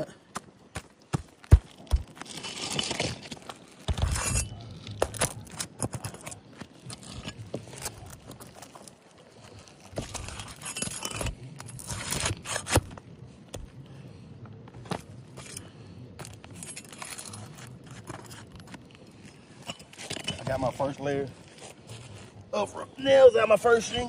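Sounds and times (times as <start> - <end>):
metal tool scraping nails and shingles: 1.9 - 8.9, 9.9 - 12.9, 15.4 - 18.7.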